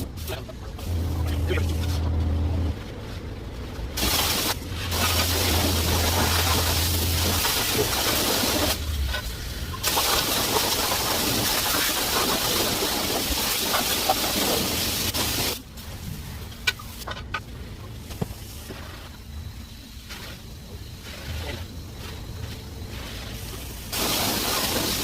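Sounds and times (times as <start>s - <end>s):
pressure washer spraying: 4.0s - 9.0s, 9.8s - 16.1s, 22.9s - 25.0s.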